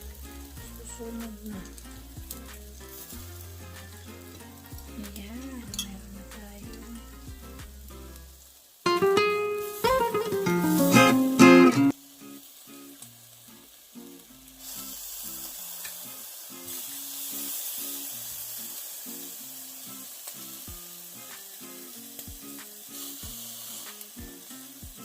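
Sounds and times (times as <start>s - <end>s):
soft background music: 0.0s - 8.3s, 8.9s - 13.8s
meat sizzling on barbecue: 0.0s - 25.0s.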